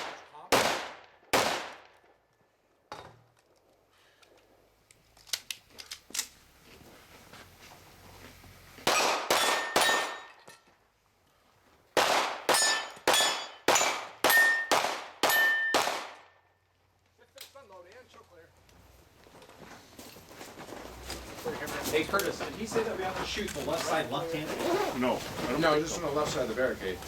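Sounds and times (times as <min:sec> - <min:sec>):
pistol shots: 0:00.0 - 0:02.0, 0:08.8 - 0:10.4, 0:12.0 - 0:16.3
steel plate ringing: 0:09.4 - 0:10.4, 0:12.5 - 0:15.8.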